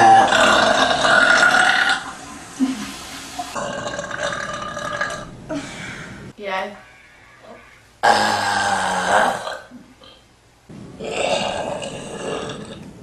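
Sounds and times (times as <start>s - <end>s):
woman burping: 0.0s - 2.0s, 8.0s - 10.2s.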